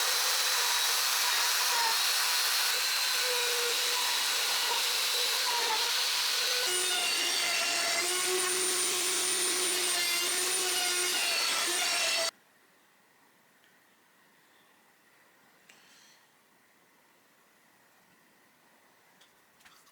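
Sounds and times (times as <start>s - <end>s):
power tool motor whining: 0.0s - 12.3s.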